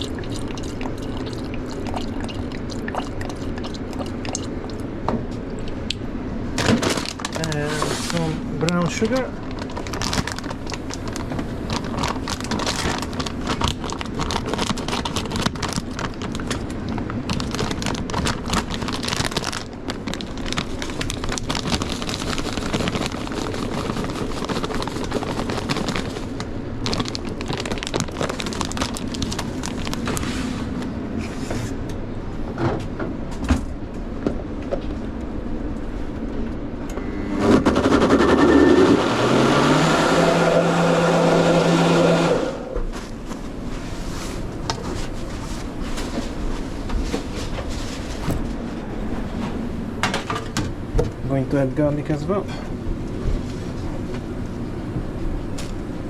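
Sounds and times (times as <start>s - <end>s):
kitchen hum: 0.0s - 27.6s, 37.8s - 54.3s
blender motor whining: 37.0s - 42.8s.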